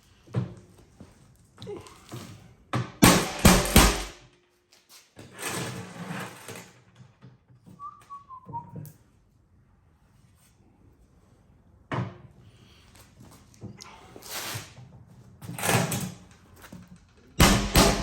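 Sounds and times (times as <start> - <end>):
tools scraping and rattling on safe: 5.2 - 7.0, 15.4 - 18.0
sharp knock: 17.4 - 18.0.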